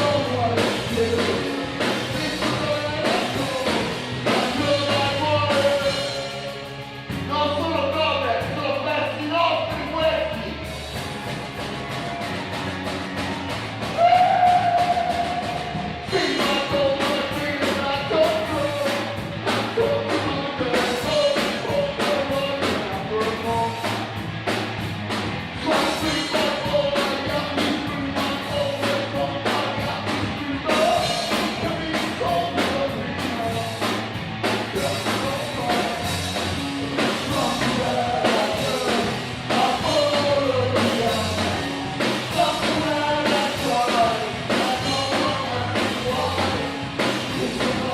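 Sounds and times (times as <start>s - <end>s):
person singing: 0.0s - 6.5s, 13.9s - 24.0s, 25.6s - 33.9s, 34.7s - 47.9s
rock band playing: 0.0s - 47.9s.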